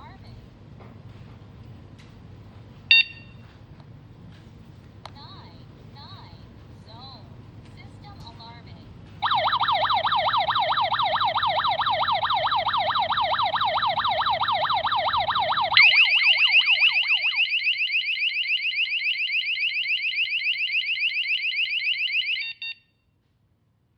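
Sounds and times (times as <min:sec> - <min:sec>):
electronic alarm siren: 0:09.2 - 0:22.8.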